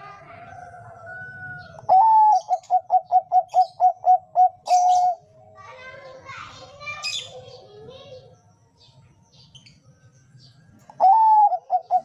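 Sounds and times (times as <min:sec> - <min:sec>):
dove cooing: 0:00.0 - 0:05.7, 0:10.8 - 0:12.0
faint bird chirps: 0:00.0 - 0:12.0.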